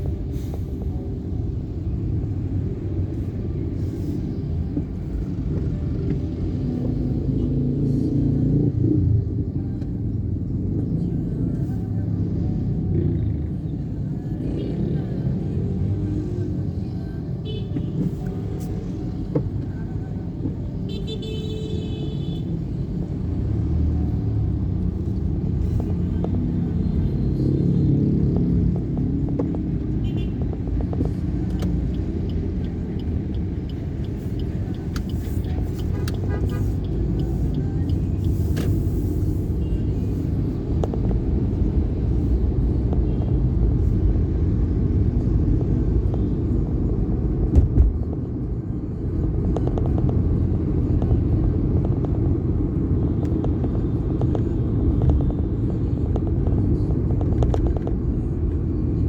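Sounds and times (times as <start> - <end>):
vehicle driving on road: 0.0 - 59.0.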